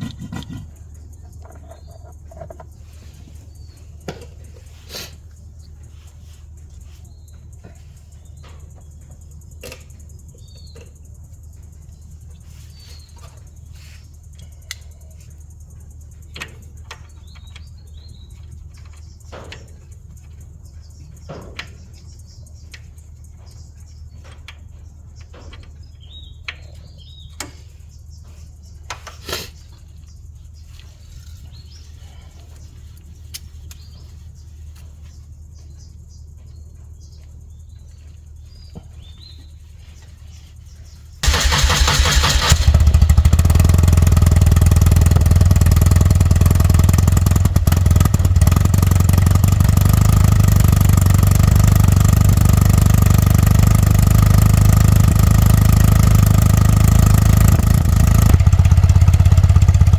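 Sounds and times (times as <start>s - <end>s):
motorcycle engine running: 0.0s - 4.3s, 41.2s - 59.9s
bird chirps: 0.0s - 59.9s.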